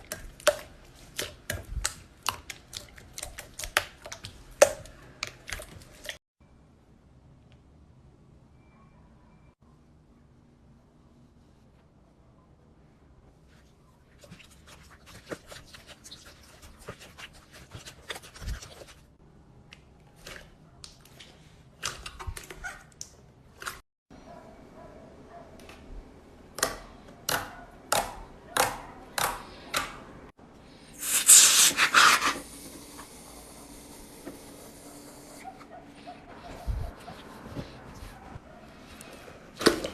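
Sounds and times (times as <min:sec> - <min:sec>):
slime squishing: 0:00.0 - 0:06.2, 0:14.1 - 0:19.1.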